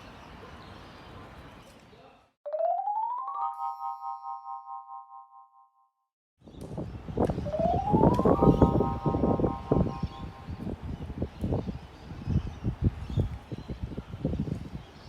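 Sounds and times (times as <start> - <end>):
electronic jingle: 2.5 - 5.6, 7.5 - 10.3.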